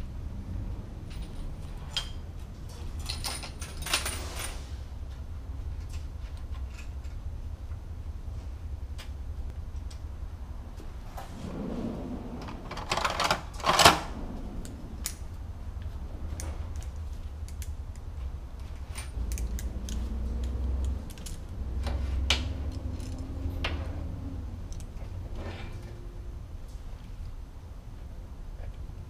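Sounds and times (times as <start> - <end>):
metallic clicks of chain and tools: 1.0 - 4.6, 5.8 - 7.2, 16.3 - 23.8, 24.6 - 25.9.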